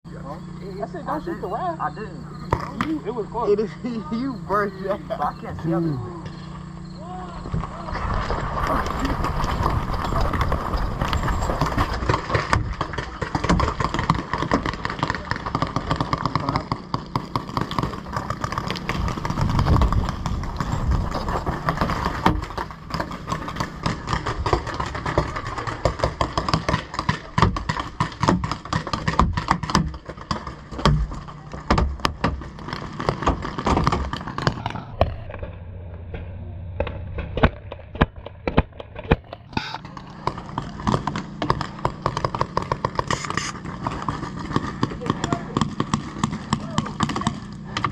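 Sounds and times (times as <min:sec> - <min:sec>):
paintball markers firing: 0:11.4 - 0:35.4, 0:36.8 - 0:47.9.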